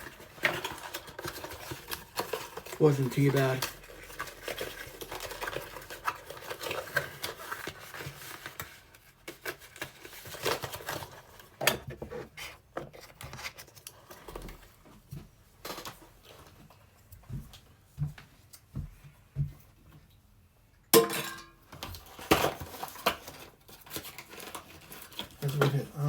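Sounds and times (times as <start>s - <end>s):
packaging rustling and scraping: 0.0s - 16.8s, 21.8s - 26.0s.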